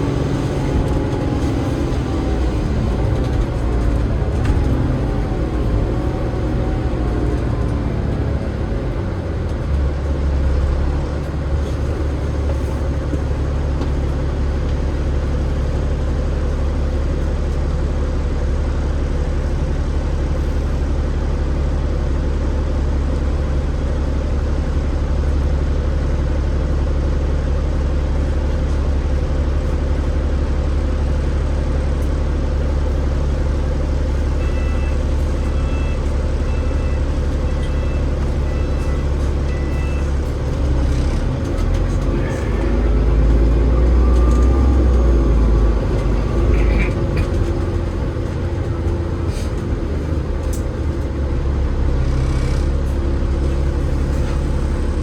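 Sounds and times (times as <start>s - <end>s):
bus diesel engine drone: 0.0s - 55.0s
two-tone beep: 34.4s - 40.1s.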